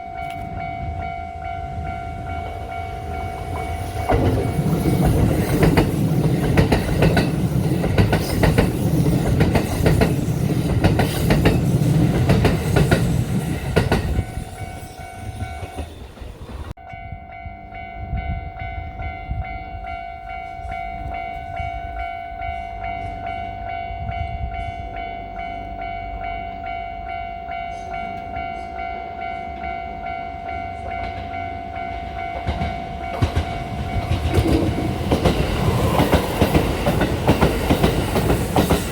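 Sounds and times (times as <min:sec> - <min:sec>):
level crossing warning bell: 0:00.0 - 0:38.9
train wheels clacking over rail joints: 0:03.4 - 0:14.4, 0:30.9 - 0:38.9.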